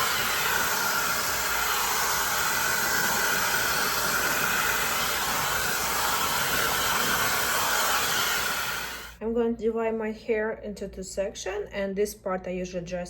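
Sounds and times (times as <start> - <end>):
hair dryer running: 0.0 - 9.2.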